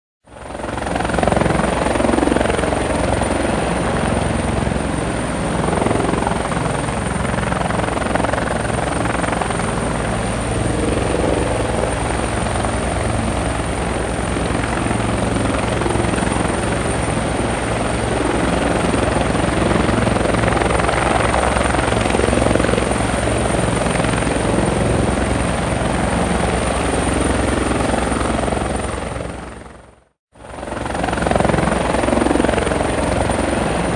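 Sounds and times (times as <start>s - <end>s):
helicopter rotor beating: 0.3s - 33.9s.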